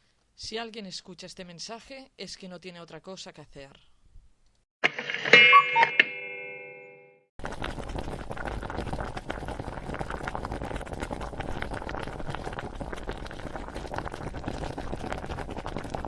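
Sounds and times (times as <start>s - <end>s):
boiling liquid bubbling: 7.4s - 16.0s.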